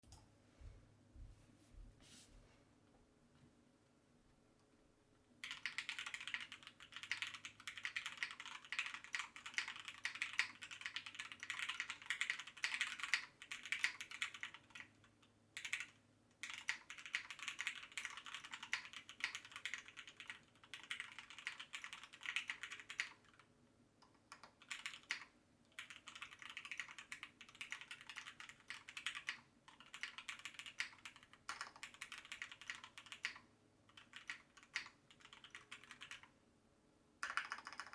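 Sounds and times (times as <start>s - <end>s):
mechanical keyboard typing: 5.4s - 23.4s, 24.0s - 36.3s, 37.2s - 37.9s.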